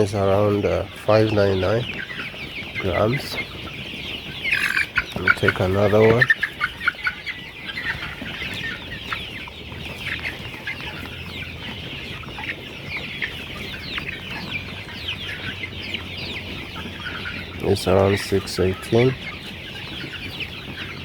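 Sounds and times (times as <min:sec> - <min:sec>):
chicks cheeping and clucking: 0:00.0 - 0:21.0.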